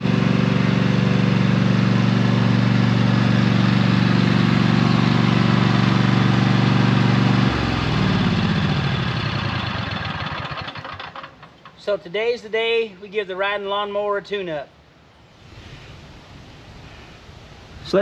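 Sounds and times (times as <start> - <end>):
riding mower engine running: 0.0 - 11.8.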